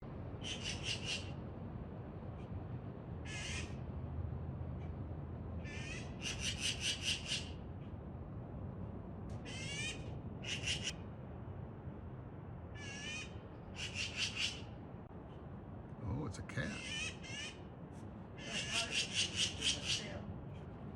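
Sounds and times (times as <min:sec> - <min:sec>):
magpie chattering: 0:00.4 - 0:01.4, 0:03.3 - 0:03.8, 0:05.7 - 0:07.6, 0:09.5 - 0:11.0, 0:12.8 - 0:14.7, 0:16.7 - 0:17.6, 0:18.4 - 0:20.2.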